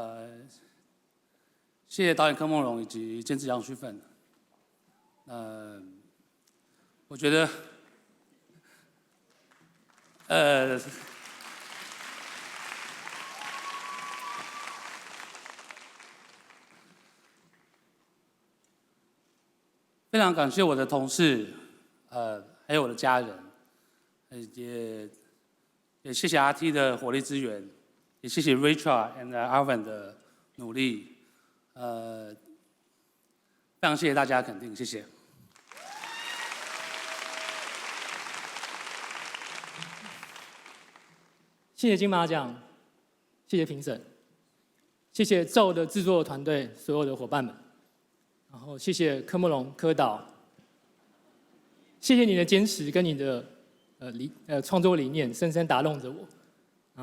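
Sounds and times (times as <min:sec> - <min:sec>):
audience applauding: 0:09.3 - 0:17.9, 0:35.5 - 0:41.4.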